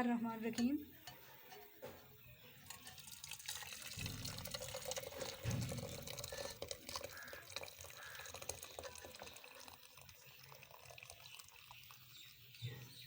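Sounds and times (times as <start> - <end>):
liquid pouring and splashing: 2.6 - 13.0.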